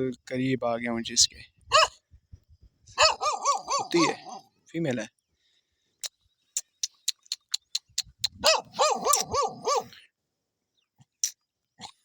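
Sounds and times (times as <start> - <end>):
dog barking: 1.7 - 2.0, 3.0 - 4.5, 8.4 - 10.0
sharp ticks: 6.0 - 8.4.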